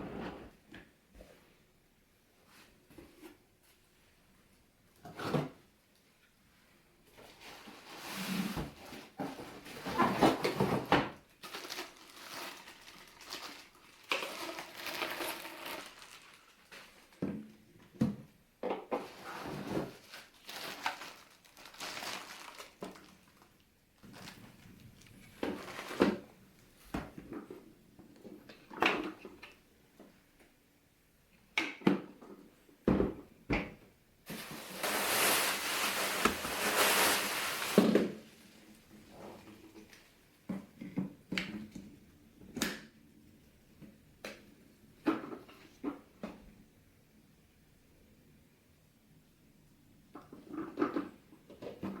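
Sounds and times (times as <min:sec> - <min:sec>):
rustling: 0:07.2 - 0:17.2, 0:19.0 - 0:27.0, 0:34.3 - 0:40.1.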